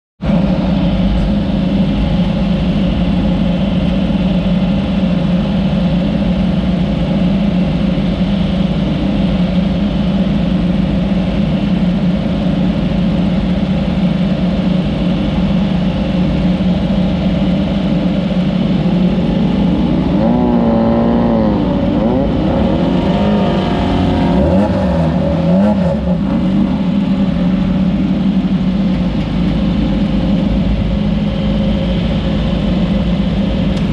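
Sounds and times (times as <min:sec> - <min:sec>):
race car engine revving: 0:17.2 - 0:33.9.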